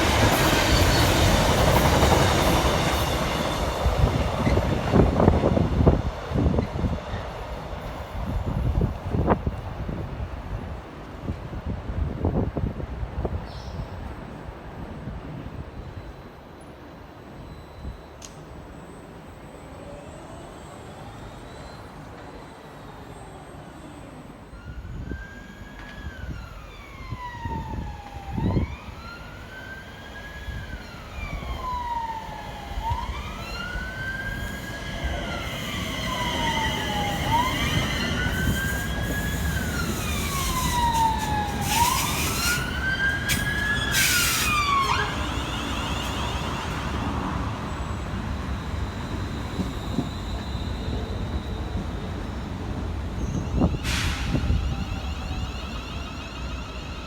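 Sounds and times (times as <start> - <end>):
emergency siren wailing: 26.2 - 49.2.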